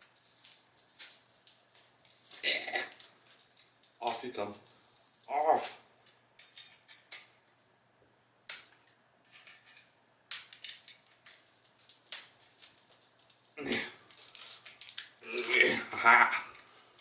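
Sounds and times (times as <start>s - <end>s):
packaging opened by hand: 10.6s - 15.9s.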